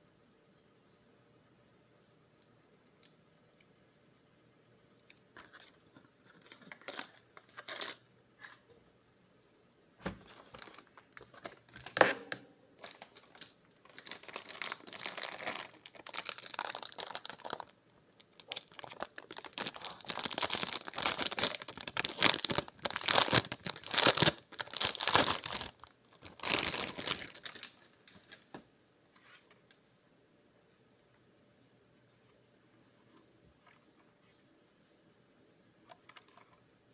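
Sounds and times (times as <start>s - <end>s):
packaging crinkling: 10.0s - 12.0s, 12.8s - 28.5s.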